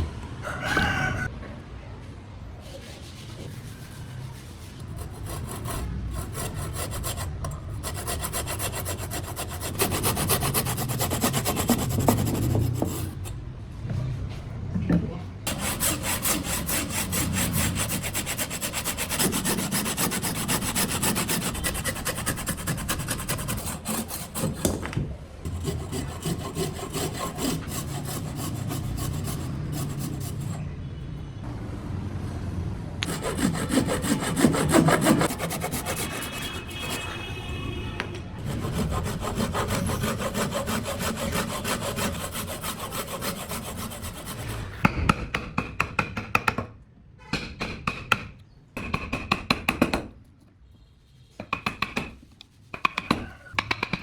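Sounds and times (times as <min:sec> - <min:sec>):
saw cutting through wood: 0:04.6 - 0:13.3, 0:15.5 - 0:24.9, 0:25.5 - 0:30.6, 0:33.0 - 0:37.1, 0:38.4 - 0:44.8.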